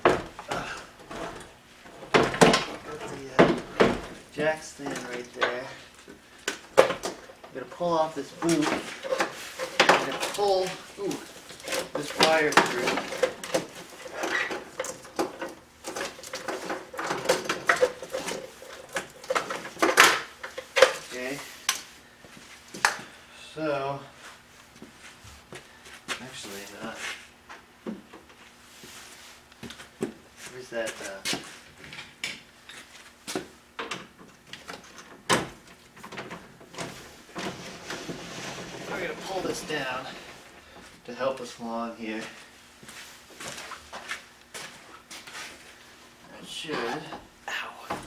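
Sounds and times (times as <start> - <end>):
wiring harness clicking and rustling: 0.0 - 21.9.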